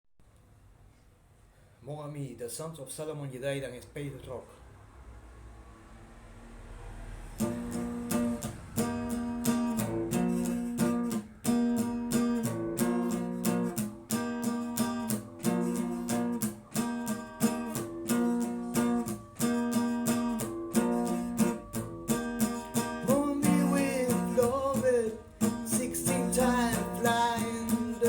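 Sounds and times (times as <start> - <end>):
acoustic guitar strumming chords: 7.4 - 28.0.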